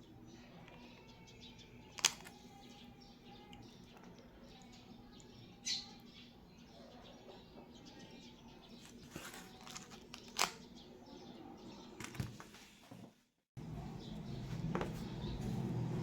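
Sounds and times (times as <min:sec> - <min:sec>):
rustling of small items: 0:08.8 - 0:10.7
steady low hum: 0:13.6 - 0:16.0.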